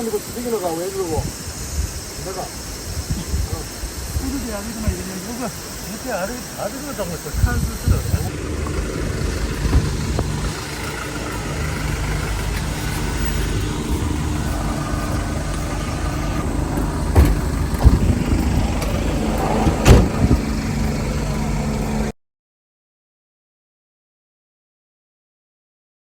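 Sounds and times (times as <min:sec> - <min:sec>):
vehicle engine idling: 0:00.0 - 0:22.1
sharp knocks: 0:14.6 - 0:20.6.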